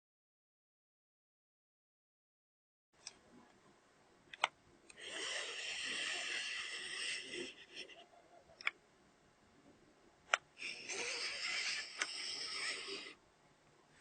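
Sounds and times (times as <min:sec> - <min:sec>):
hissing scrape across paper: 0:05.0 - 0:07.9.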